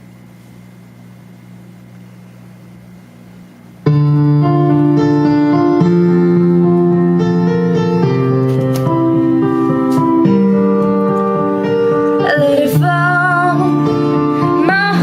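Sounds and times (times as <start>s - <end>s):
low steady hum: 0.0s - 15.0s
piano chords: 3.8s - 15.0s.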